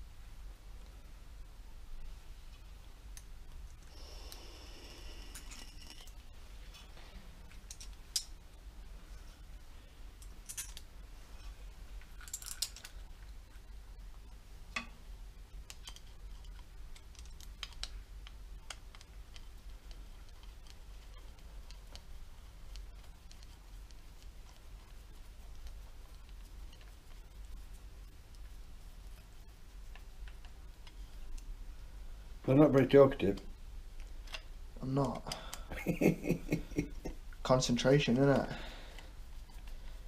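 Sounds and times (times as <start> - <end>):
steady low hum: 0.0 - 40.0
hand tools clicking and clinking: 10.4 - 10.8, 12.2 - 13.0.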